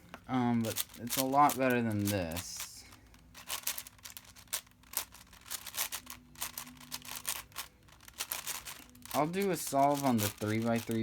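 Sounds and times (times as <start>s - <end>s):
puzzle cube clicking: 3.4s - 11.0s.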